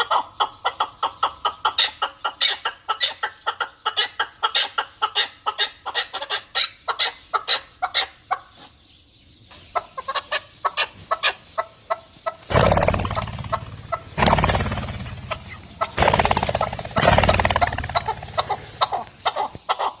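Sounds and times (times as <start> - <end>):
fowl clucking: 0.0 - 8.7, 9.6 - 12.5, 15.3 - 20.0
noise: 10.9 - 20.0.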